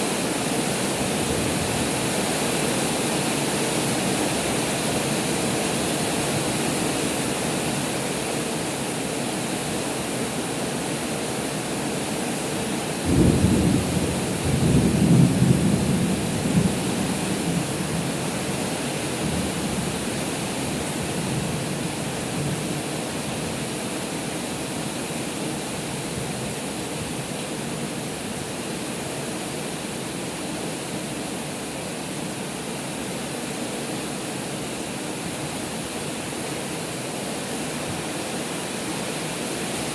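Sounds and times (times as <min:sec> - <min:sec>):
heavy rain pouring: 0:00.0 - 0:39.9
thunder clap rumbling: 0:13.1 - 0:18.1.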